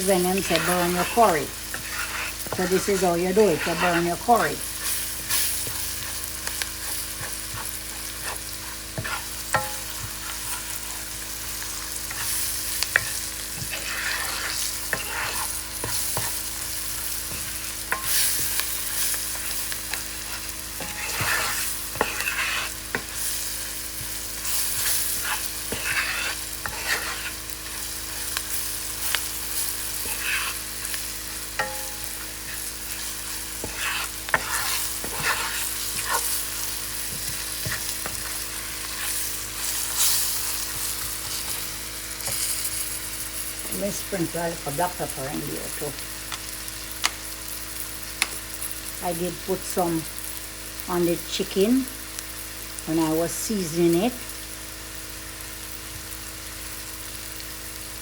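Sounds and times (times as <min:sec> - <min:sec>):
spices sizzling in hot oil: 0:00.0 - 0:58.0
spoon scraping and tapping pot: 0:06.5 - 0:10.5, 0:20.8 - 0:23.1, 0:31.6 - 0:32.6.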